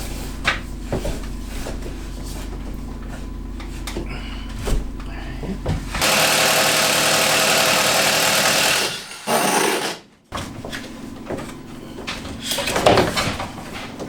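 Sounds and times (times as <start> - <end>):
power tool running loudly: 6.0 - 10.1
scattered knocks and handling noises: 10.4 - 14.0.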